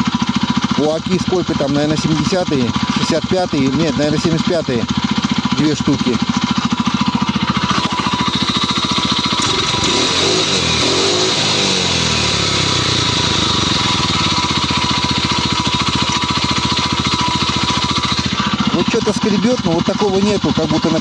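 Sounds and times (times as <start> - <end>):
four-stroke engine revving: 0.0 - 21.0
light engine scraping: 6.3 - 21.0.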